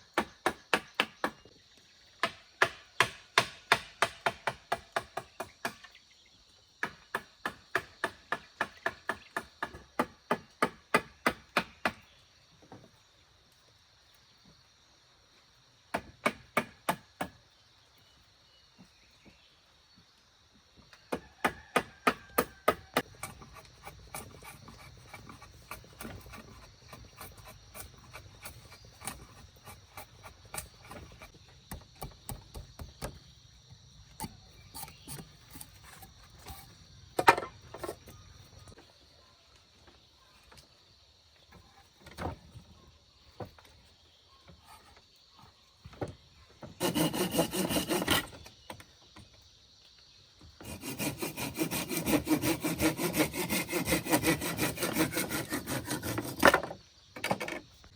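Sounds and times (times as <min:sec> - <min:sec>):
hand tool striking wood: 0:00.2 - 0:01.5, 0:02.2 - 0:05.9, 0:06.8 - 0:12.0, 0:15.9 - 0:17.4, 0:21.1 - 0:33.2.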